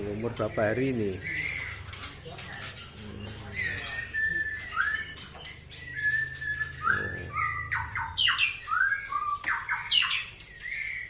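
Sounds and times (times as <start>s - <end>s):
birds squawking: 0.0s - 11.0s.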